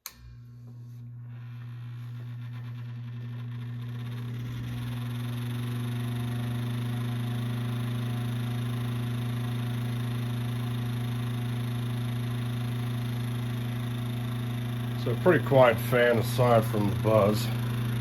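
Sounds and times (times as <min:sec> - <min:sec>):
table fan electrical buzz: 0:00.0 - 0:18.0.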